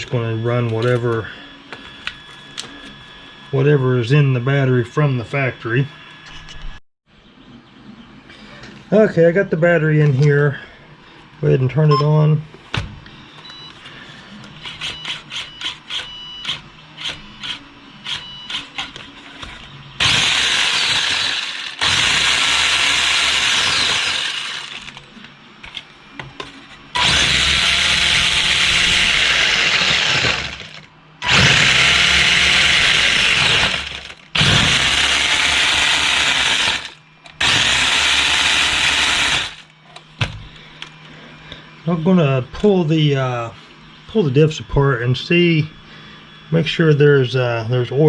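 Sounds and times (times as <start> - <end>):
short beeps: 11.9 - 12.2
electric motor whirring: 20.0 - 25.1, 26.9 - 39.7.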